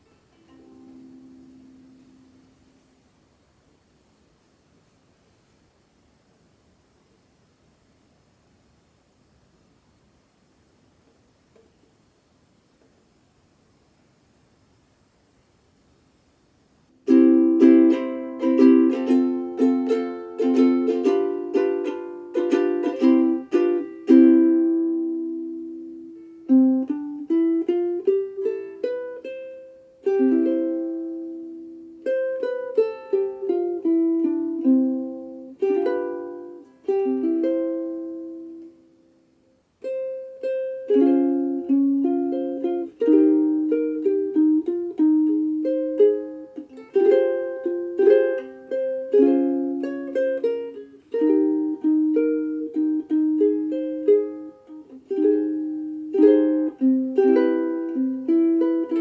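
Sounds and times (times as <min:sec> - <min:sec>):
ukulele picked notes and chords: 0:00.0 - 0:02.8, 0:17.0 - 0:59.0.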